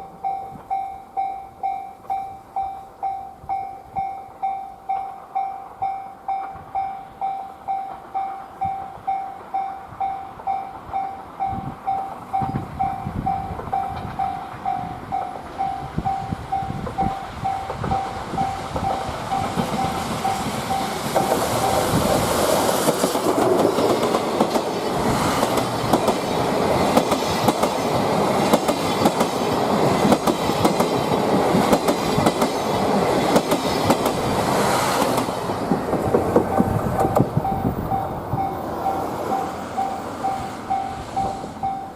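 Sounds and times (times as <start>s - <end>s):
level-crossing alarm bell: 0.0s - 22.0s, 36.5s - 41.9s
steam train approaching: 0.0s - 41.9s
wheels clattering over rail joints: 16.8s - 39.8s.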